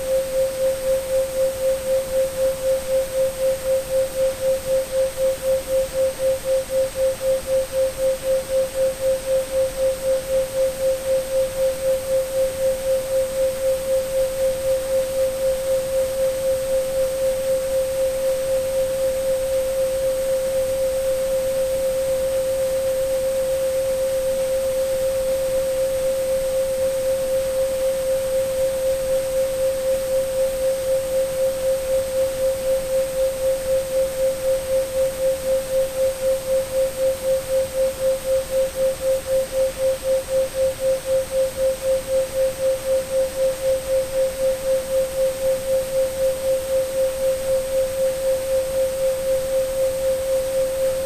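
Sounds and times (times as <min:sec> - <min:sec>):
faint noise hiss: 0:00.0 - 0:51.0
pulsing sine tone: 0:00.0 - 0:51.0.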